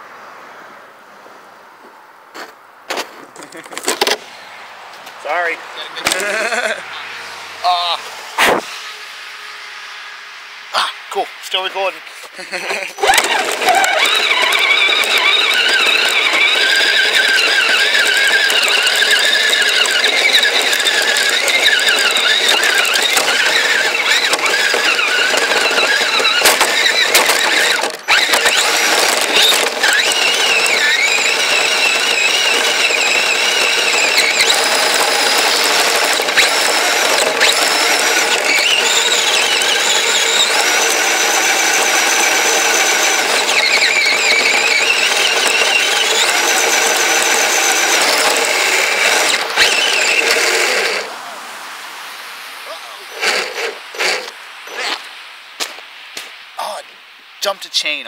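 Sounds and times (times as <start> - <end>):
tracks clattering: 2.3 - 4.3, 12.2 - 51.0
electric motor whine: 13.0 - 51.3, 53.0 - 55.0.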